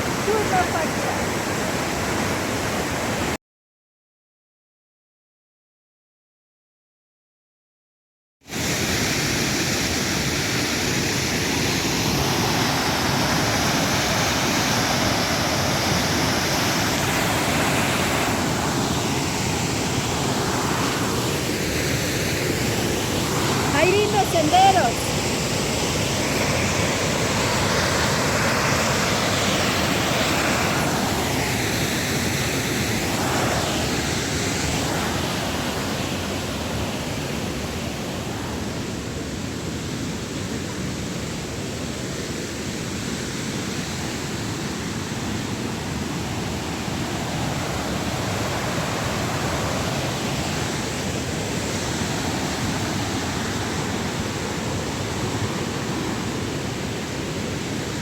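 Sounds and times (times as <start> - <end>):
waterfall rushing: 0.0 - 3.4, 8.5 - 37.8.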